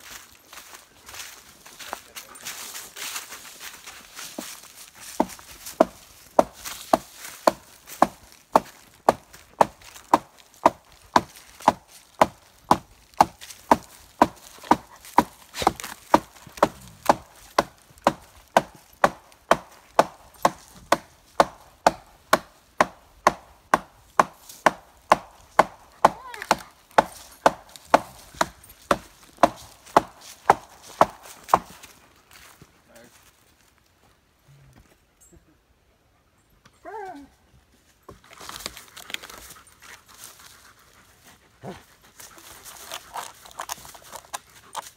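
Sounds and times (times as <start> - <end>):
axe chopping wood: 5.2 - 31.9.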